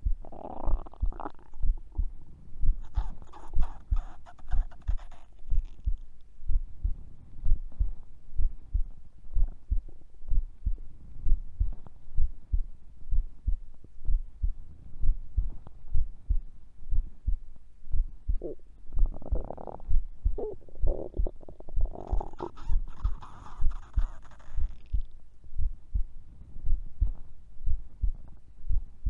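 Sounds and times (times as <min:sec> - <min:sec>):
heartbeat thumps: 0:00.0 - 0:29.0
stomach gurgle: 0:00.2 - 0:02.1, 0:02.8 - 0:06.0, 0:18.4 - 0:25.1.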